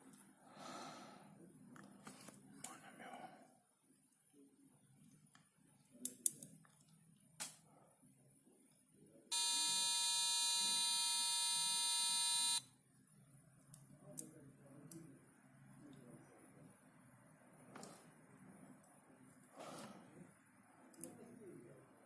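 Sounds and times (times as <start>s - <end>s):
buzzy electronic tone: 9.3s - 12.6s.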